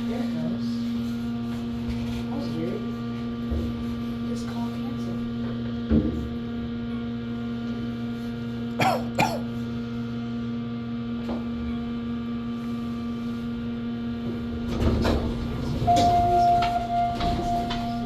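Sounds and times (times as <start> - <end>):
cough-like sounds: 8.8 - 9.6
elevator car humming: 11.0 - 18.0.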